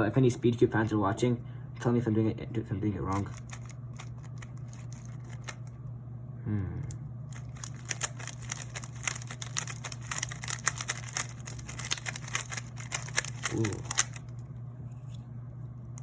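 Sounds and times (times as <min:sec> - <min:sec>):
steady low hum: 0:00.0 - 0:16.0
speed cube layers clicking: 0:07.3 - 0:14.2.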